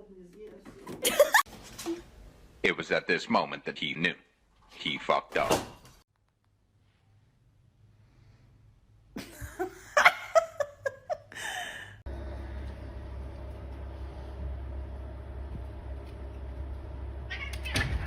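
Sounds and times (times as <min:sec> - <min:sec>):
person laughing: 0:01.0 - 0:01.4, 0:09.2 - 0:12.0
steady low hum: 0:12.0 - 0:17.4.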